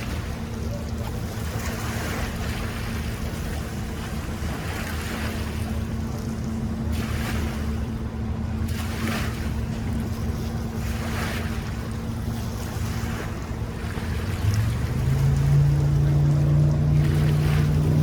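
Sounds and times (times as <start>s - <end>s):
boat engine running: 0.0s - 18.0s
water washing: 0.0s - 18.0s.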